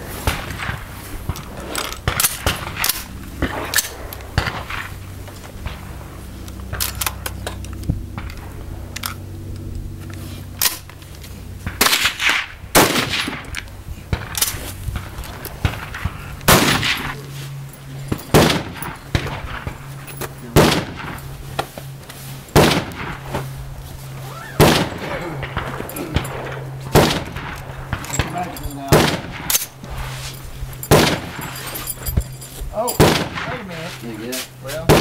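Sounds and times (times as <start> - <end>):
steady low hum: 0.0 - 35.0
rifle shots: 0.2 - 7.3, 11.6 - 17.2, 18.1 - 19.8, 20.5 - 21.3, 22.5 - 23.5, 24.6 - 29.8, 30.8 - 31.6, 33.0 - 33.7.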